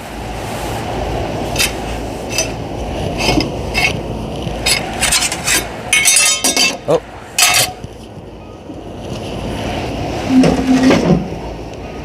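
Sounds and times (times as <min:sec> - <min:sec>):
metal tools clinking: 0:04.6 - 0:06.8
low scraping and rubbing: 0:09.5 - 0:11.6.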